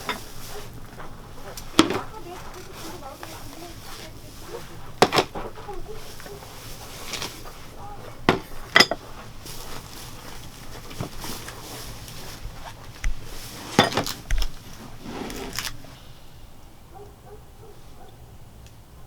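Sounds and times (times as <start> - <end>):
cooking utensils clinking: 0.0 - 12.2, 13.4 - 15.8.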